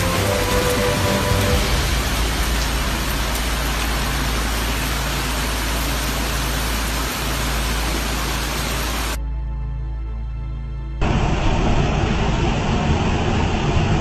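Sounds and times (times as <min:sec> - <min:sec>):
low rumble: 0:00.0 - 0:06.0, 0:10.9 - 0:14.0
heavy rain pouring: 0:00.0 - 0:09.2, 0:11.0 - 0:14.0.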